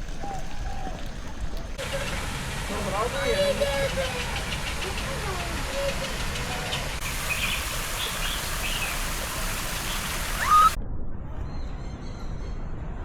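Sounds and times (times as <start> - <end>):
running water rushing: 0.0 - 10.8
birds calling: 1.8 - 10.8.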